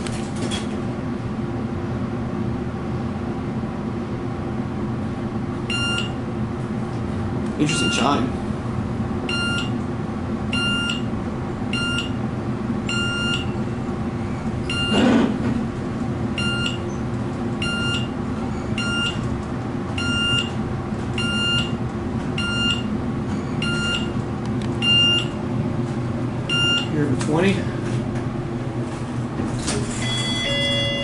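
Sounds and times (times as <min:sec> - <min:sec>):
low hum of elevator car: 0:00.0 - 0:31.0
short electronic elevator beep: 0:05.7 - 0:06.2, 0:11.7 - 0:12.2, 0:14.7 - 0:15.0, 0:23.6 - 0:24.1, 0:30.0 - 0:31.0.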